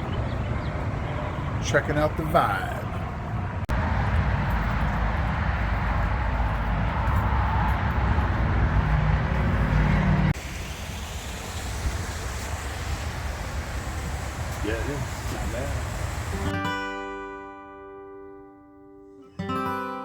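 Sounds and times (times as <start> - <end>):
vehicle and road rumble: 0.0 - 16.5.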